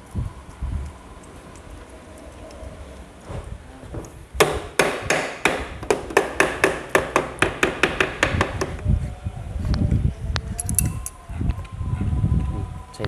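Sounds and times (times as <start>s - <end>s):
hammer tapping on metal: 4.4s - 8.8s.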